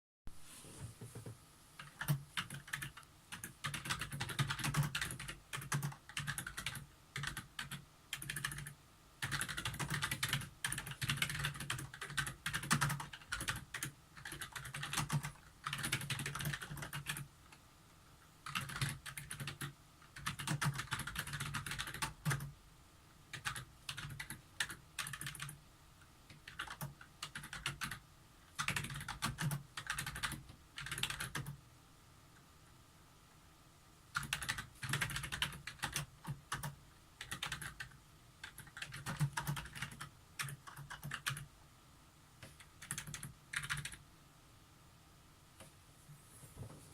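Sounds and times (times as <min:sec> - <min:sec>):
keyboard typing: 0:01.1 - 0:17.3, 0:18.4 - 0:22.5, 0:23.3 - 0:25.6, 0:26.3 - 0:28.0, 0:28.6 - 0:31.6, 0:34.1 - 0:41.5, 0:42.4 - 0:44.0.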